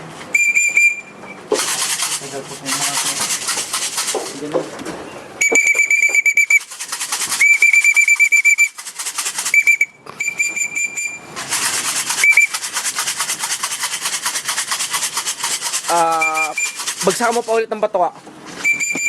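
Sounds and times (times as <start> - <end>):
pea whistle trilling blasts: 0.3 - 1.4, 5.4 - 6.7, 7.3 - 8.8, 9.5 - 11.3, 12.2 - 12.6, 16.1 - 16.8, 18.6 - 19.0
steady fast rattle: 1.5 - 4.6, 5.6 - 9.8, 11.0 - 17.7.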